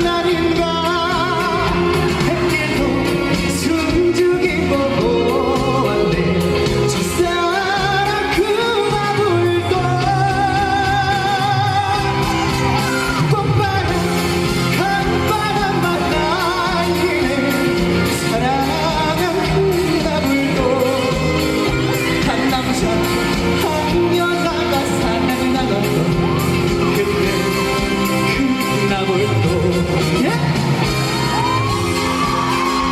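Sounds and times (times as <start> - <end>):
loud backing track: 0.0 - 32.9
person singing with vibrato: 0.0 - 32.9
audience shouting: 11.8 - 14.2, 30.2 - 32.9.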